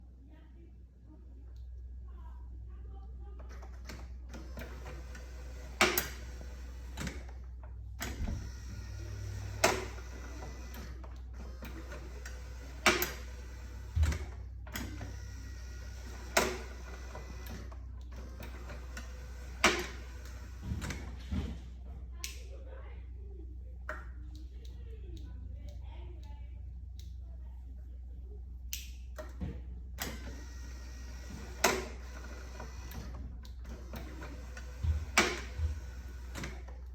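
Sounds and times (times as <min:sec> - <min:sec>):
steady low hum: 0:00.0 - 0:36.9
push switch and relay clicks: 0:03.5 - 0:21.0, 0:30.0 - 0:36.9.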